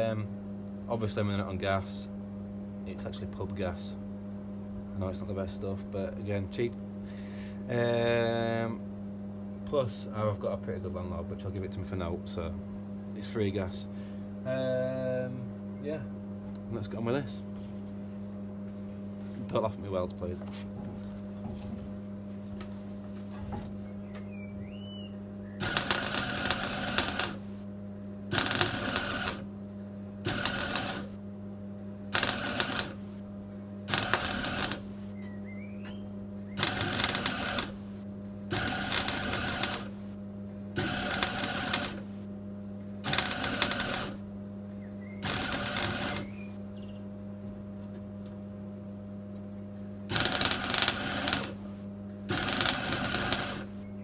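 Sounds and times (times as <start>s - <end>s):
steady low hum: 0.0s - 54.0s
welding arc crackle: 25.6s - 27.6s, 28.3s - 29.5s, 30.2s - 31.2s, 32.1s - 33.2s, 33.9s - 35.2s, 36.6s - 40.2s, 40.8s - 42.3s, 43.0s - 44.2s, 45.2s - 46.6s, 50.1s - 53.8s.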